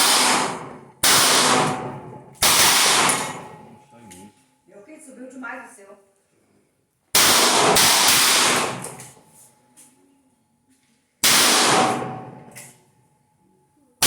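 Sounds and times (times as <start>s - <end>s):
revolver gunshots with echo: 0.0s - 3.7s, 7.2s - 9.2s, 11.2s - 12.7s.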